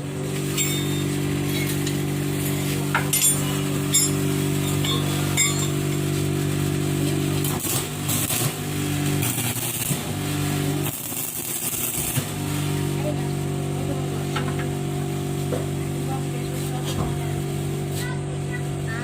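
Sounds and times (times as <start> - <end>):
steady machine hum: 0.0 - 19.0
hiss: 6.0 - 13.0.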